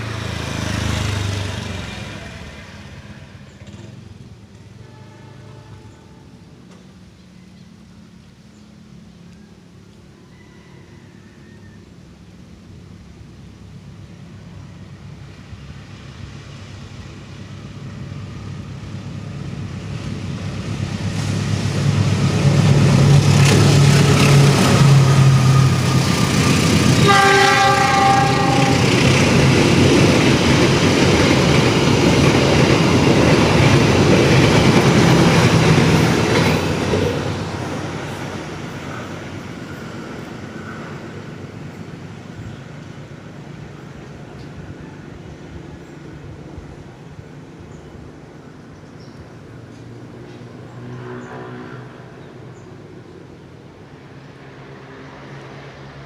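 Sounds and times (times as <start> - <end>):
passenger train passing: 0.0 - 56.0
locomotive horn blast: 4.6 - 6.5, 26.9 - 29.4.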